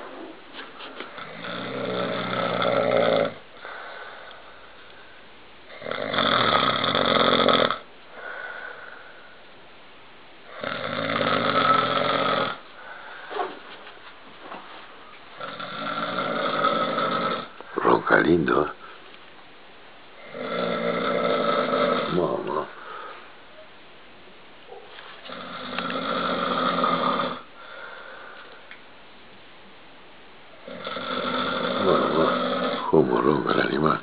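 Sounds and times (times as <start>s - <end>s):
man snoring: 1.1s - 3.8s, 5.7s - 7.9s, 10.5s - 12.6s, 15.4s - 17.6s, 20.2s - 22.8s, 25.3s - 27.8s, 30.6s - 34.0s
soft breathing: 3.5s - 5.4s, 8.1s - 9.5s, 12.6s - 15.2s, 22.6s - 23.7s, 27.4s - 28.8s.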